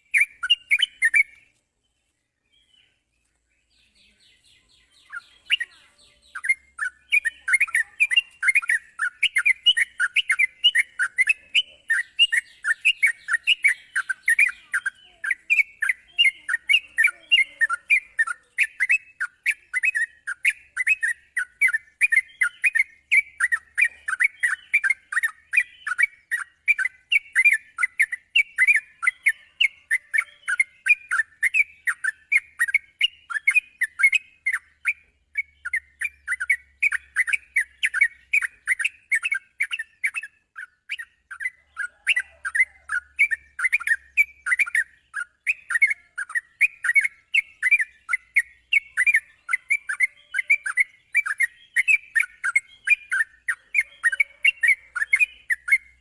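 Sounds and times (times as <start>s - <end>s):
bird rapid chirping song: 0.0s - 56.0s.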